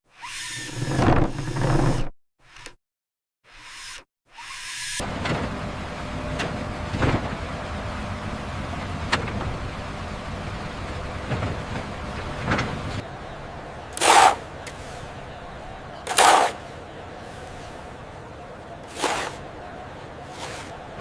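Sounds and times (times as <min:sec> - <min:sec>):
heavy machinery rumbling: 0:05.0 - 0:21.0.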